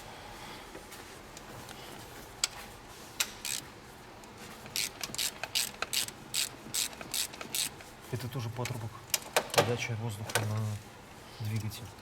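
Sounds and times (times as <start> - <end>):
ratchet wrench ratcheting: 3.4 - 3.6, 4.7 - 7.8.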